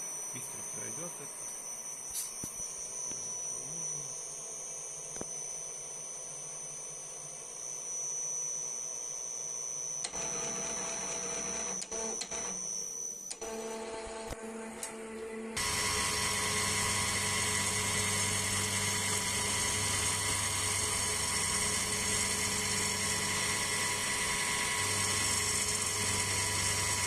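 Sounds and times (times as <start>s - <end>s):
milling machine whine: 0.0s - 27.0s
stepper motor drive noise: 13.3s - 27.0s.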